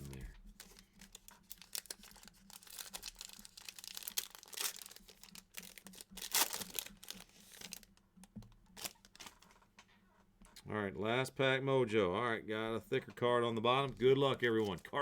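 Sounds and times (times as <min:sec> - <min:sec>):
cards clicking and rustling: 0:00.0 - 0:09.6
plastic wrapper crinkling and tearing: 0:00.0 - 0:09.6.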